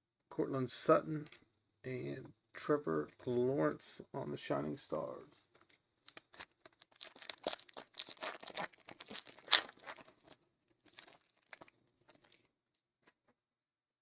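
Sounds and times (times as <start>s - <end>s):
wrapper crinkling and tearing: 6.1s - 12.4s.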